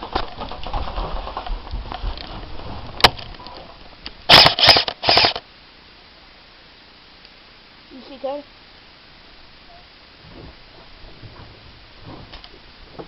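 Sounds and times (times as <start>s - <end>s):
airsoft gun firing bursts: 4.3s - 5.4s
sharp click: 4.3s - 5.4s.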